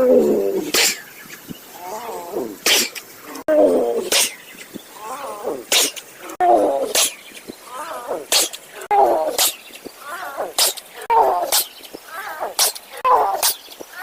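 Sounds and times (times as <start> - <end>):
tiger throaty vocal sound: 0.0 - 14.0
tiger sneezing: 0.6 - 1.1, 2.4 - 3.0, 4.0 - 4.4, 6.6 - 7.2.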